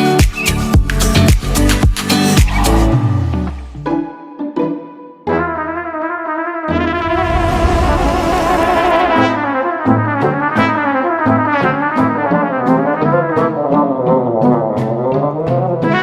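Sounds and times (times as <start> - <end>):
brass-like melody: 5.3 - 14.8, 15.8 - 16.0.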